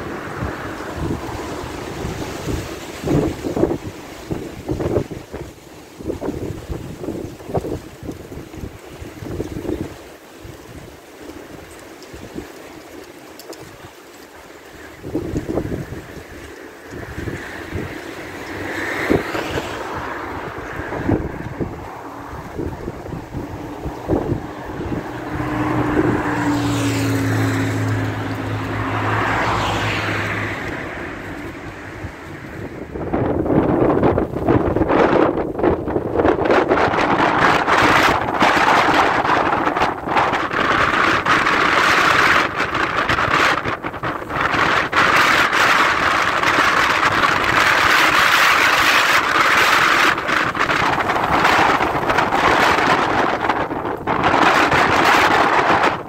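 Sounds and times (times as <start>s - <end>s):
vehicle engine hum passing: 0.0s - 7.0s, 13.4s - 56.0s
wind noise: 0.0s - 56.0s.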